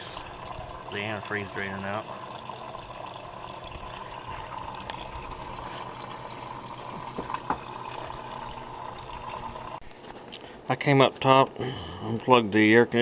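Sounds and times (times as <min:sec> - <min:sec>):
coolant draining in a stream: 0:00.0 - 0:09.9.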